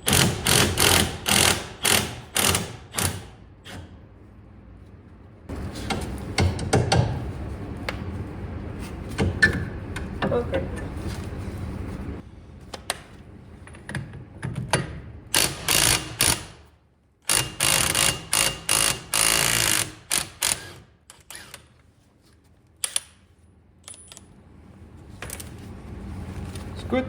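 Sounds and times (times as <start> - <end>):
impact wrench hammering: 0.0 - 3.8, 14.7 - 16.6, 17.2 - 20.8.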